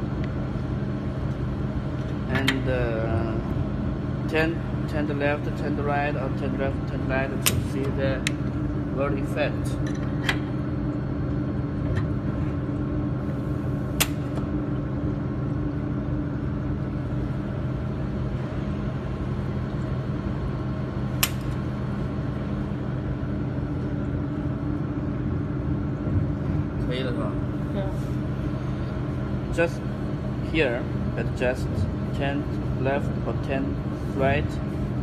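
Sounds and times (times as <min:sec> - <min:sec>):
welding machine electrical hum: 0:00.0 - 0:35.0.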